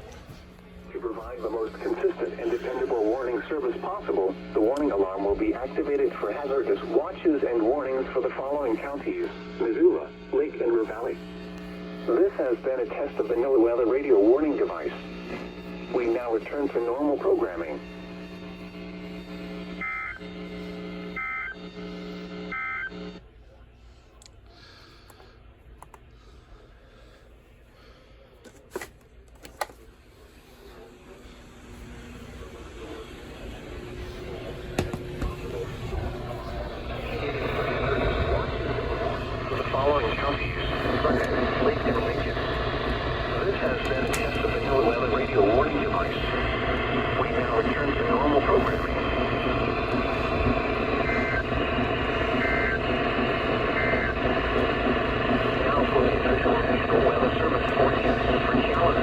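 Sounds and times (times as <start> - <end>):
radio hiss: 0.0 - 28.9, 29.5 - 59.0.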